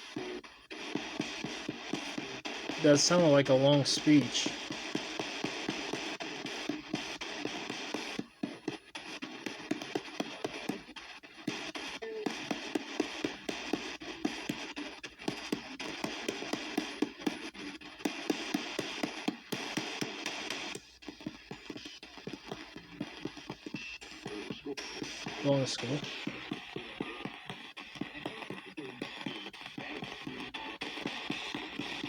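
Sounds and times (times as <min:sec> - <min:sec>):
radio static rushing: 0:00.0 - 0:21.4
fragments of broadcast audio: 0:00.0 - 0:32.0
rapid clicks: 0:00.0 - 0:32.0.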